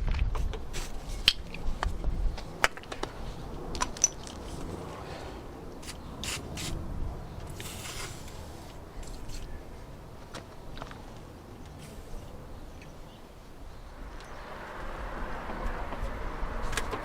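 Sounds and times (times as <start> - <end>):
short scrape: 5.8 - 6.8, 7.6 - 9.5.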